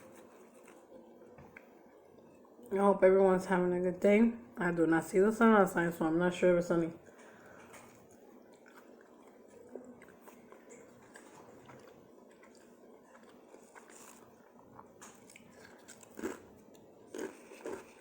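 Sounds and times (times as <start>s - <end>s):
chewing and crunching chips: 0.0s - 2.7s, 7.1s - 18.0s.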